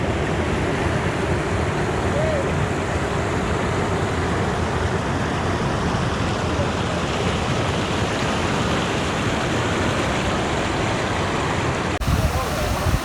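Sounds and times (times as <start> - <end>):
water flowing over rocks: 6.1 - 13.0.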